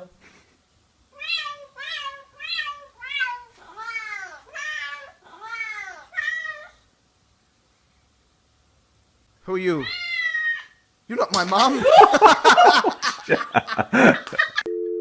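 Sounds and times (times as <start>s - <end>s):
cat meowing: 1.2s - 6.8s, 9.8s - 10.8s.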